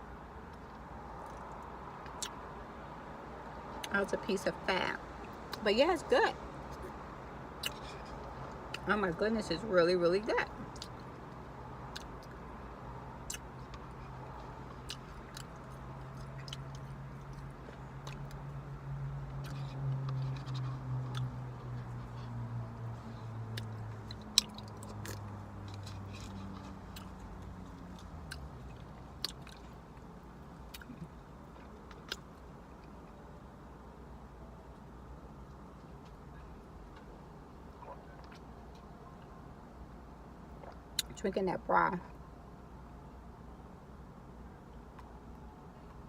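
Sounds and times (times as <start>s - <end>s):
person chewing soup: 13.2s - 18.4s, 19.4s - 22.4s, 23.3s - 29.8s.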